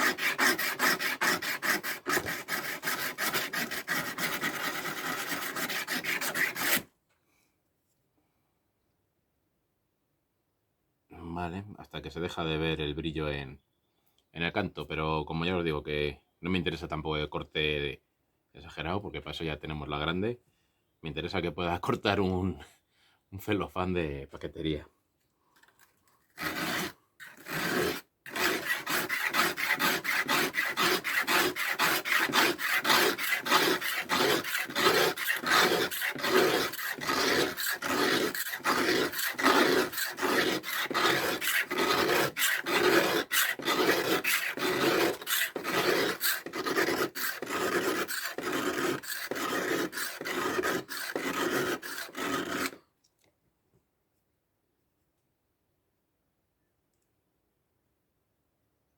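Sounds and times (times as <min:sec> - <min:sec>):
knife blade scraping on sharpener: 0:26.4 - 0:52.8.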